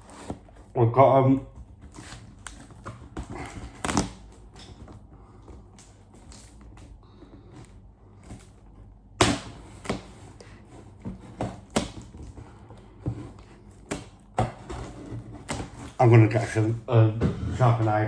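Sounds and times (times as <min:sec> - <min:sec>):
knife scratching cardboard box: 0:00.0 - 0:00.7, 0:01.5 - 0:04.9, 0:09.4 - 0:16.2.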